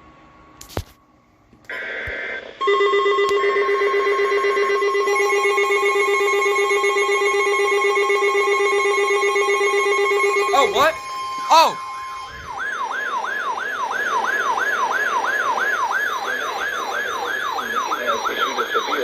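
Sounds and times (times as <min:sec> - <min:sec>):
loud steady alarm tones: 0:01.7 - 0:19.0
short burst of tones: 0:05.1 - 0:13.2.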